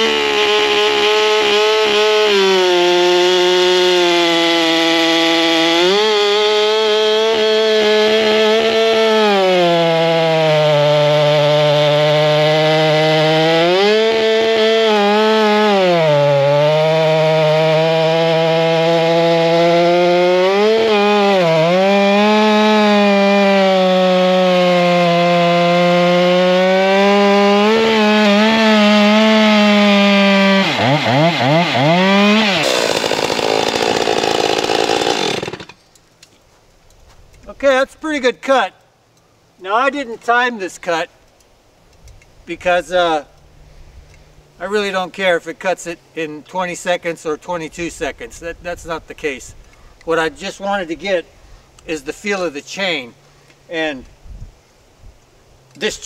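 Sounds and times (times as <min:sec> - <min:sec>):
chainsaw cutting log: 0:00.0 - 0:35.8.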